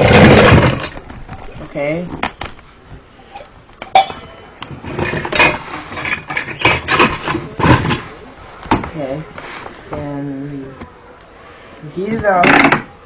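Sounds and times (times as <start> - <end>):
metal clattering: 0.0 - 1.0
pots and pans clanking: 3.3 - 8.0.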